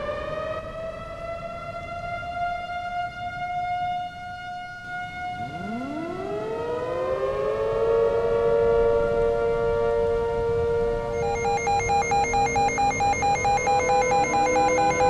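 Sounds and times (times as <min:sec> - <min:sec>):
high siren wail: 0:00.0 - 0:15.0
sirens winding up: 0:05.0 - 0:09.4, 0:11.1 - 0:15.0.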